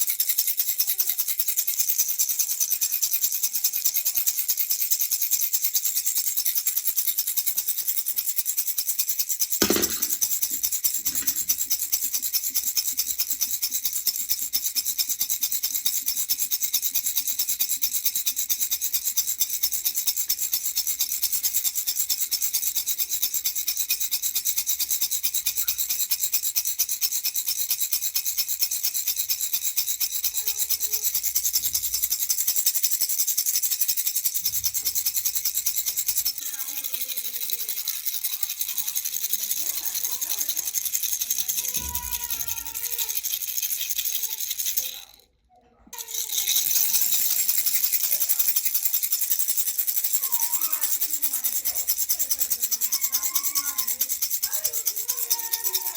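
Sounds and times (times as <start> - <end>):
baby rattle shaken rapidly: 0.0 - 55.9.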